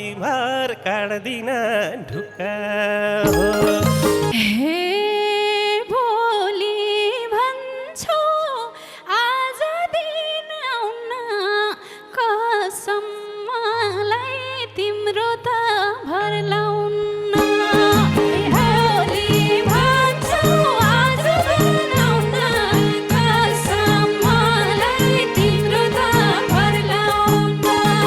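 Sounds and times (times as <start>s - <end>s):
instrumental accompaniment: 2.1s - 4.5s, 17.4s - 28.0s
woman singing wordless melody: 3.3s - 28.0s.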